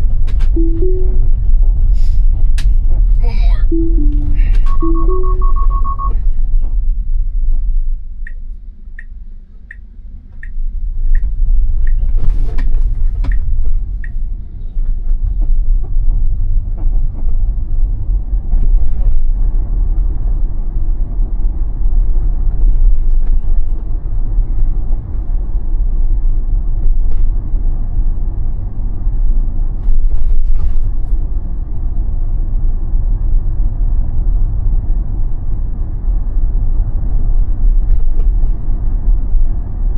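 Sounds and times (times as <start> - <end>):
road and tyre rumble in car: 0.0 - 0.6, 1.2 - 3.7, 5.8 - 39.9
turn signal ticking: 3.8 - 6.1, 9.0 - 12.0.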